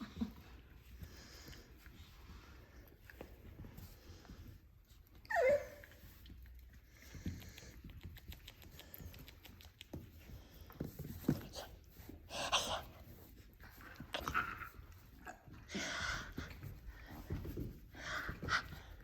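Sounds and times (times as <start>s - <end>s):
clicks and scuffles of play: 0.0s - 12.2s
puppy yelping: 5.2s - 6.0s.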